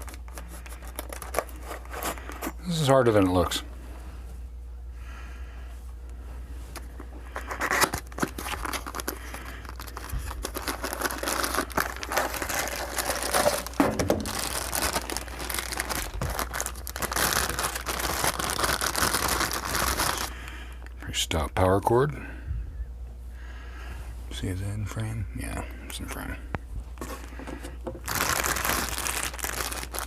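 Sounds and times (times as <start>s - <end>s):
plastic packaging crinkling: 0.0s - 2.5s, 6.7s - 21.0s, 27.0s - 30.0s.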